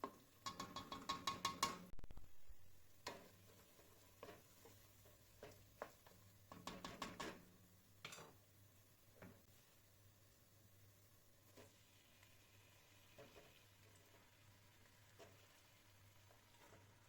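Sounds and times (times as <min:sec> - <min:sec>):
kitchen utensils tapping: 0:00.0 - 0:01.9.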